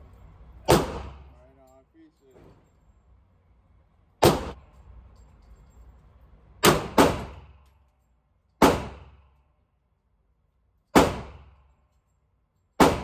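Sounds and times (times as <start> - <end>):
gunshots with echo: 0.7 - 1.3, 12.8 - 13.0.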